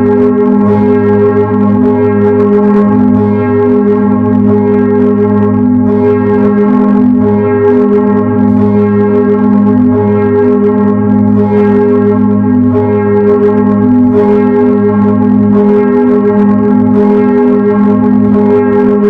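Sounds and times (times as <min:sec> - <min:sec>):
church bells pealing: 0:05.8 - 0:06.7, 0:11.3 - 0:12.1.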